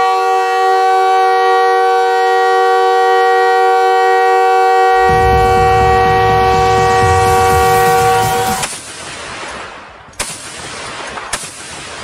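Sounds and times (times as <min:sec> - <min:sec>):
goal horn blast: 0:04.8 - 0:08.7
low rumble: 0:05.0 - 0:08.7.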